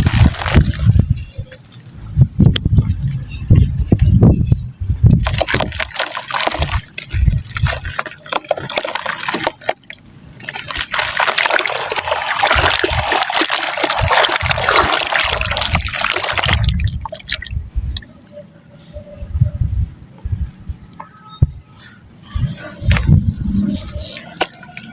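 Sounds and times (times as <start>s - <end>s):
dry mud crumbling into water: 0.0s - 1.2s, 5.1s - 17.6s
soft low thumps: 2.0s - 5.2s.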